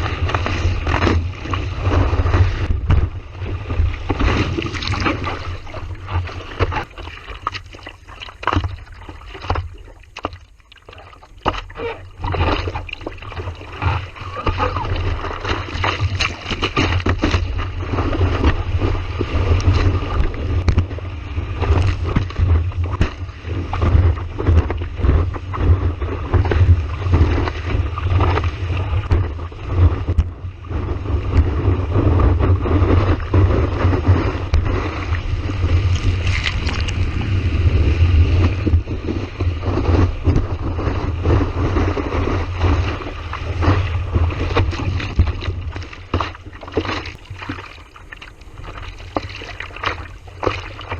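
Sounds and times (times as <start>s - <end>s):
surf washing: 0.0s - 50.9s
wind buffeting microphone: 13.2s - 50.9s.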